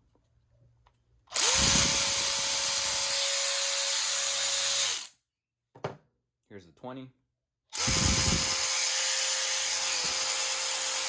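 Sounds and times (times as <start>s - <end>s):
cordless ratchet motor whine: 1.3s - 5.1s, 7.8s - 11.0s.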